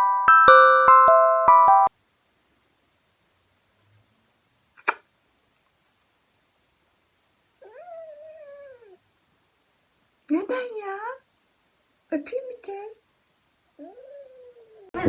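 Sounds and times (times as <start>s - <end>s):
sharp click: 4.8s - 5.1s
cat meowing: 7.6s - 9.0s.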